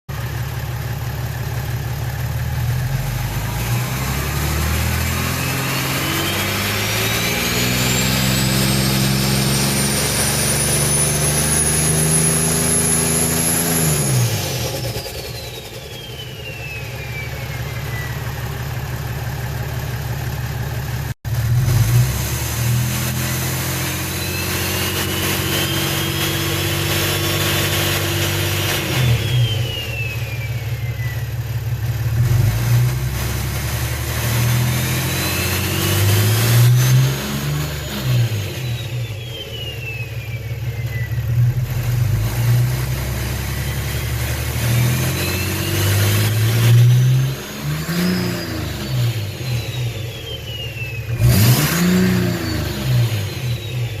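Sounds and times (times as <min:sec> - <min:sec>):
diesel engine revving: 0:02.3 - 0:54.0
turbo whistle: 0:04.0 - 0:18.9, 0:23.1 - 0:31.4, 0:34.5 - 0:54.0.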